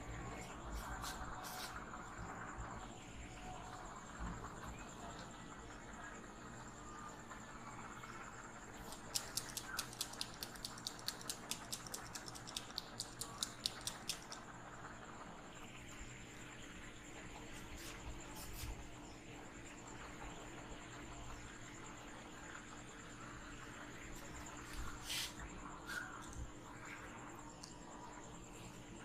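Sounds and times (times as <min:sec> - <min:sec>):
soft rubbing on hair: 0:00.3 - 0:02.0, 0:17.5 - 0:18.9, 0:24.1 - 0:26.2.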